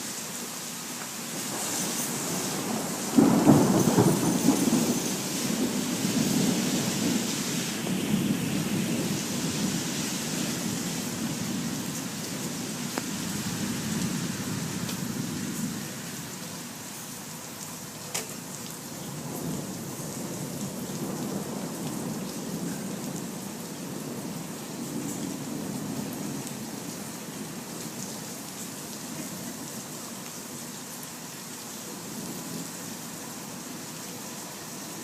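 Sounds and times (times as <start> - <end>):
heavy rain: 0.0 - 35.0
thunder rumbling: 1.4 - 16.1.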